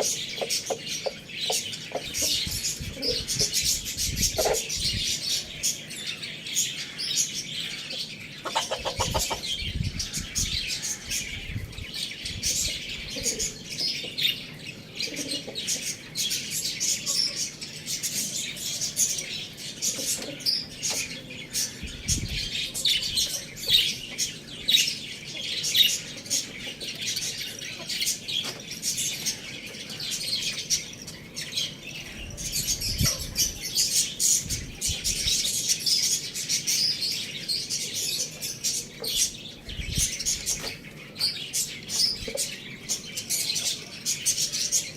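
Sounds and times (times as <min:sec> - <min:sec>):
many small birds chirping: 0:00.0 - 0:44.9.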